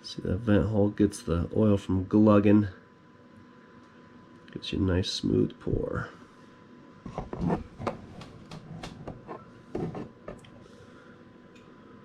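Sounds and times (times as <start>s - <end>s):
plastic bottle and funnel handling: 7.1s - 10.5s.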